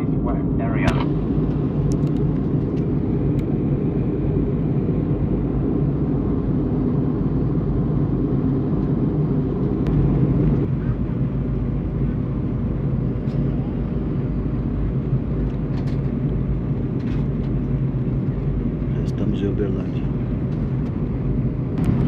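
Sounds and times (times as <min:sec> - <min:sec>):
airliner engines droning: 0:00.0 - 0:22.0
rushing air: 0:21.7 - 0:22.0.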